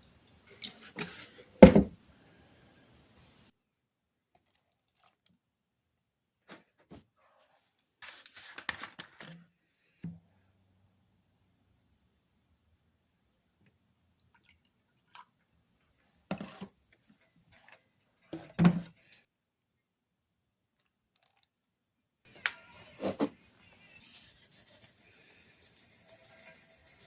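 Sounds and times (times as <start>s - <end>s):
faint steady hiss: 0.0s - 3.6s, 22.3s - 27.0s
objects knocking and clattering: 1.6s - 2.0s.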